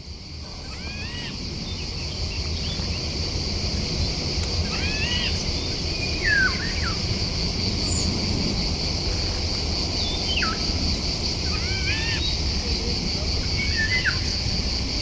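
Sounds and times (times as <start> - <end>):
high insect drone: 0.0 - 15.0
birds calling: 0.5 - 8.3, 9.9 - 12.6, 13.4 - 14.4.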